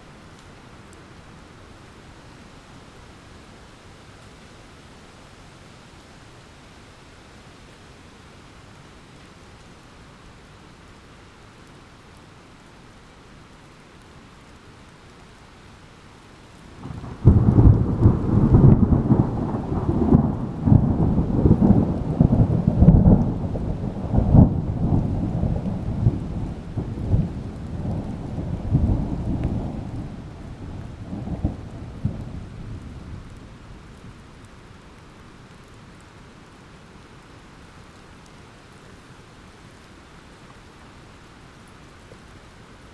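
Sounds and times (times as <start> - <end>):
steady rain hiss: 0.0 - 42.9
thunderclap and rumble: 16.8 - 33.9.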